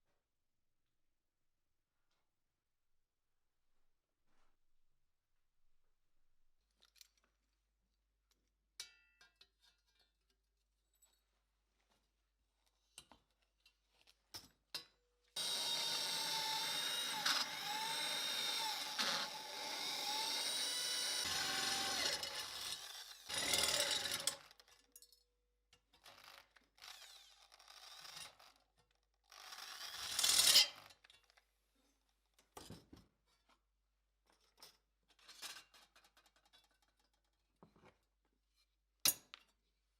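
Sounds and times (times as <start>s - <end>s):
electric drill on metal: 15.4s - 24.5s, 26.8s - 28.4s, 29.3s - 30.7s.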